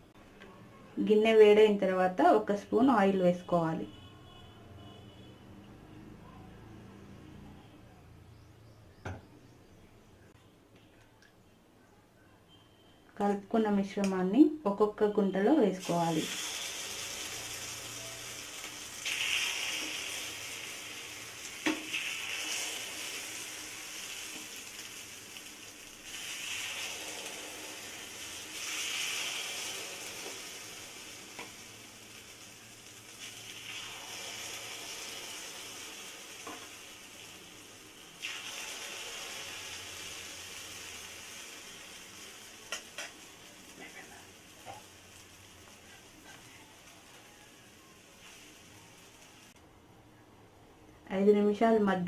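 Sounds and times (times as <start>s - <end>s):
batter sizzling in hot oil: 15.6s - 49.6s.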